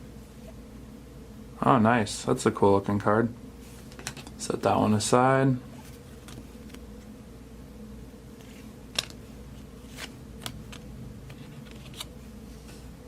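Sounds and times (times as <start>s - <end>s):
faint steady hum: 0.0s - 13.0s
cards clicking and tapping: 8.9s - 9.2s, 9.9s - 12.1s.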